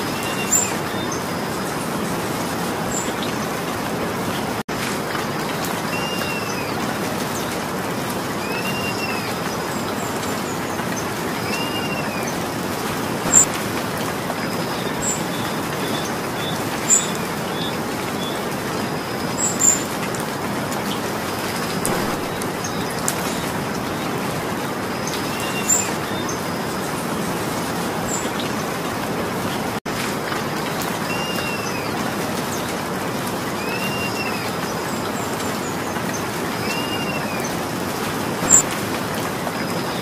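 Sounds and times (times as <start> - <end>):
sharp drips: 0.0 - 27.1, 30.1 - 40.0
steady rain falling: 0.0 - 40.0
bird chirping: 13.3 - 13.5, 21.8 - 23.4, 38.4 - 38.6.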